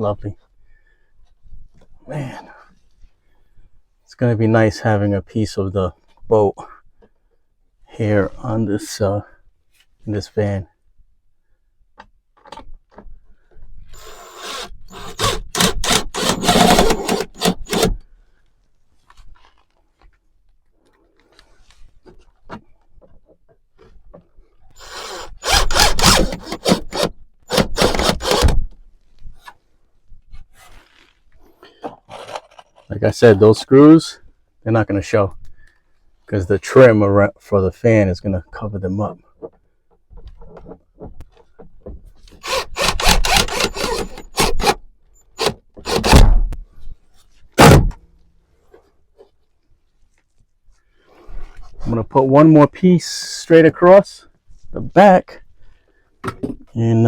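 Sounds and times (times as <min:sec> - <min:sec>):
hand scraping wooden boards: 0:14.0 - 0:18.0, 0:24.8 - 0:28.6, 0:42.4 - 0:46.4
tool rasping on wood: 0:14.0 - 0:18.0, 0:24.8 - 0:28.5, 0:42.4 - 0:46.3.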